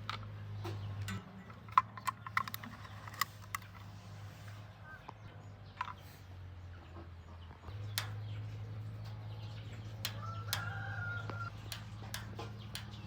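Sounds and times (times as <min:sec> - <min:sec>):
sharp clicks: 0:00.0 - 0:03.9, 0:07.7 - 0:08.4, 0:10.0 - 0:13.0.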